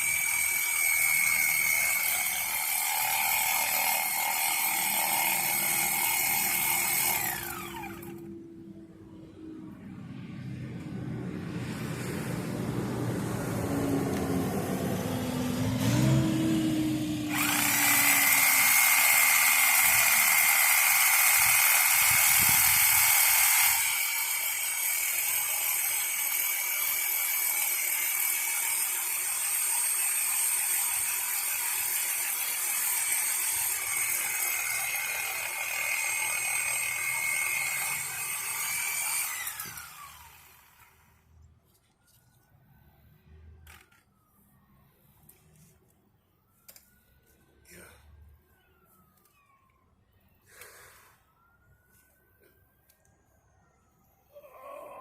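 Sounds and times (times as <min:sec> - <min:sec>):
power saw cutting wood: 0:00.0 - 0:08.4, 0:14.9 - 0:41.2.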